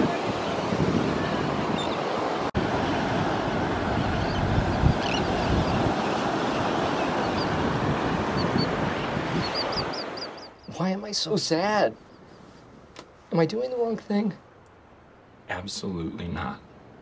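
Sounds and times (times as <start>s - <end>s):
wind rumbling on microphone: 0.0s - 10.7s
surf washing onto beach: 0.0s - 11.8s.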